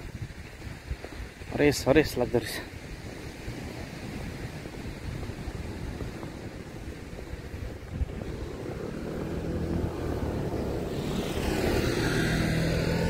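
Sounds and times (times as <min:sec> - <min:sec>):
approaching motor engine: 0:07.0 - 0:13.0.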